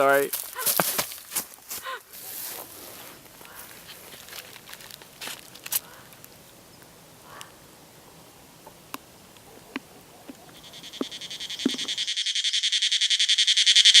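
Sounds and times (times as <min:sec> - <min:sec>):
cicada pulsing buzz: 0:10.4 - 0:14.0.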